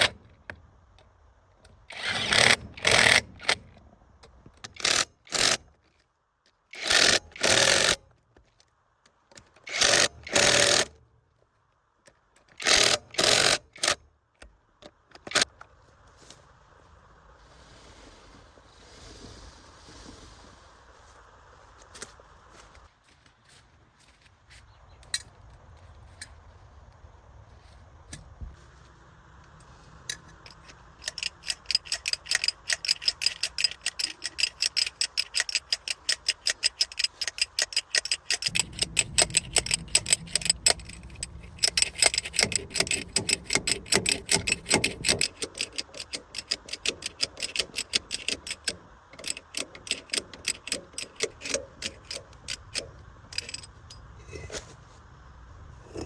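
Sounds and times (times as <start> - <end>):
ratchet wrench clicking: 1.9 - 3.6, 4.7 - 5.6, 6.7 - 8.0, 9.6 - 10.9, 12.6 - 14.0, 30.1 - 54.4
low rumble: 38.4 - 42.9.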